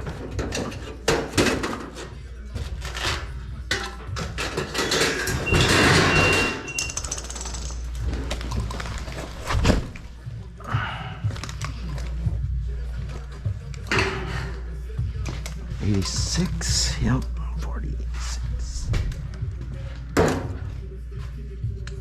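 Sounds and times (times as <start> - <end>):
steel framing knocks and clatter: 0.0 - 6.8
background music: 0.0 - 22.0.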